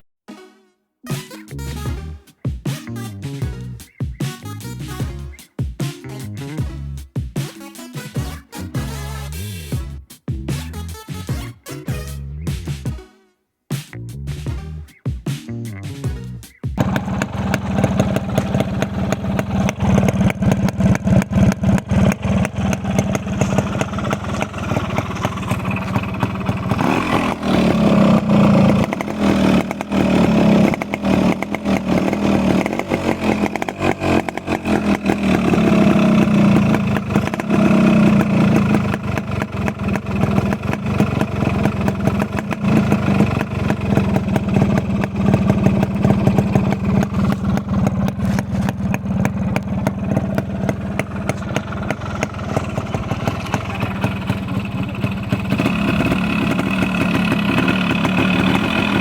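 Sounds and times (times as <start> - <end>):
two-stroke motorcycle engine revving: 16.8 - 59.0.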